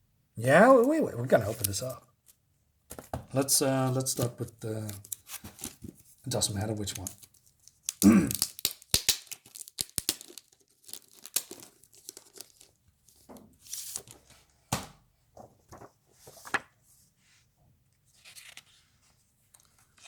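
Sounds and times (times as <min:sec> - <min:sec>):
wrapping crinkling: 0:00.8 - 0:02.0, 0:03.8 - 0:14.3, 0:15.7 - 0:16.6
wrapping ripping: 0:06.3 - 0:12.8.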